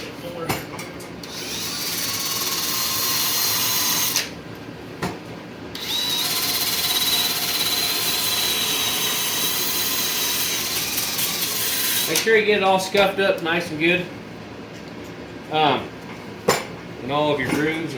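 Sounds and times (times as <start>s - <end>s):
power tool whining on leather: 1.2s - 4.3s, 5.8s - 12.2s.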